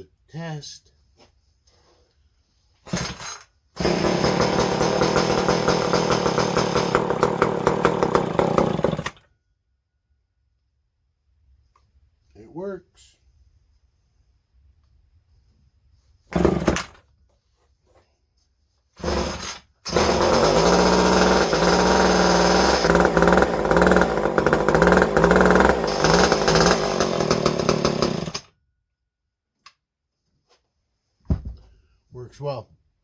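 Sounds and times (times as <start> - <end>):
chainsaw starting and running: 3.8 - 9.3, 16.4 - 17.0, 19.0 - 28.5.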